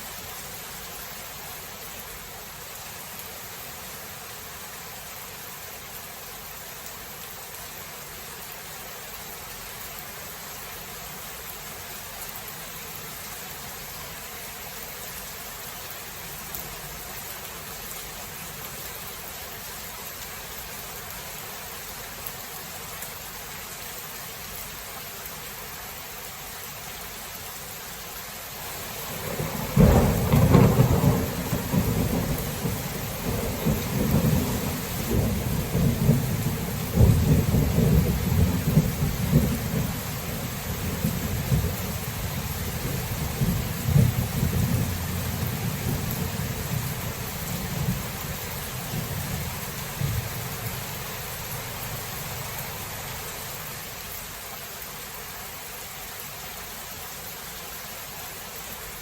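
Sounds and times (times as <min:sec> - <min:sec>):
rain hissing: 0:00.0 - 0:59.0
thunder rumble: 0:28.6 - 0:53.1.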